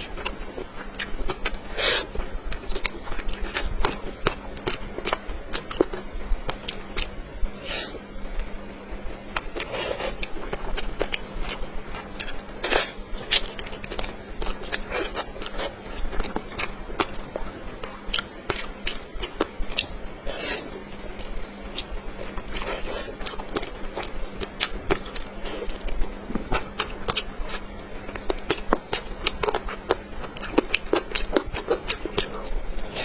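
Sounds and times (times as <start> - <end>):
chewing and biting: 0.0 - 7.2, 9.2 - 33.0
faint low hum: 0.0 - 33.0.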